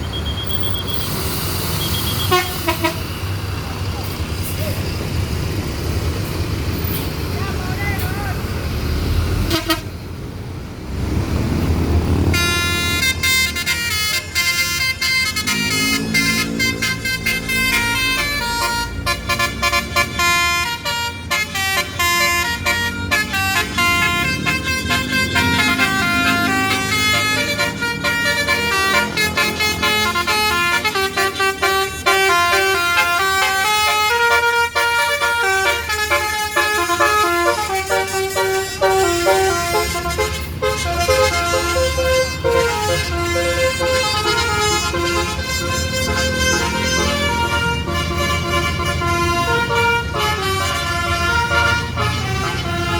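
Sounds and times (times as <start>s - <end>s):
bus horn playing melody: 2.2s - 3.3s, 9.4s - 10.0s, 12.2s - 52.9s
low engine rumble: 2.4s - 52.9s.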